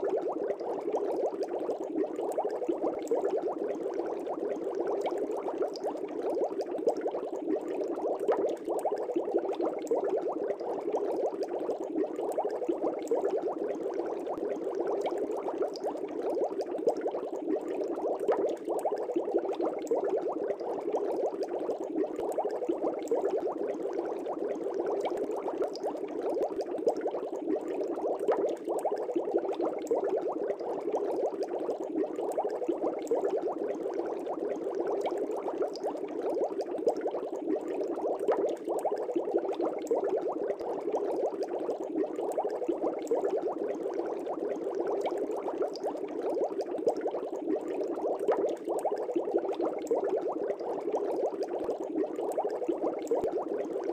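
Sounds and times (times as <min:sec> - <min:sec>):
aquarium air bubbling: 0:00.0 - 0:53.9.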